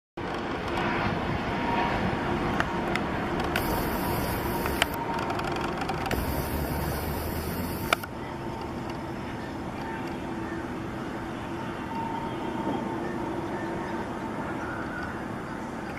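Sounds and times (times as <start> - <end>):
jet engines running: 0.3 - 9.0
sharp clicks: 3.4 - 5.0, 5.7 - 8.1.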